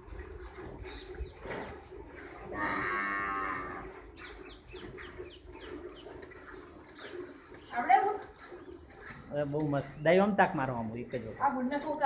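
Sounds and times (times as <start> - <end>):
cow mooing: 2.6 - 3.9.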